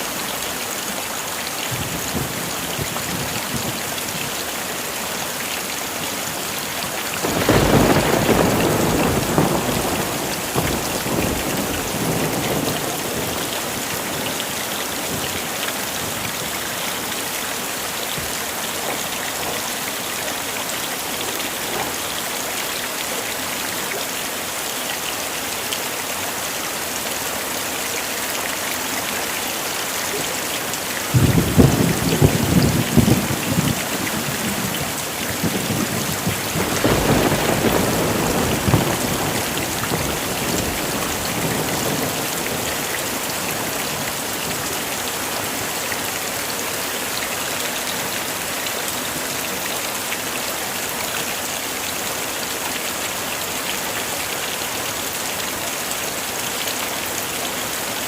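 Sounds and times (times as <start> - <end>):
heavy rain falling: 0.0 - 58.0
thunder rumbling: 7.2 - 14.2, 31.1 - 43.7.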